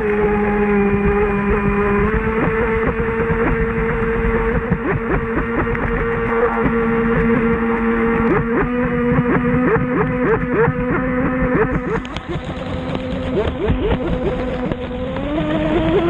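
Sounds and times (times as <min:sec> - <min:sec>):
electric motor whine: 0:00.0 - 0:16.0.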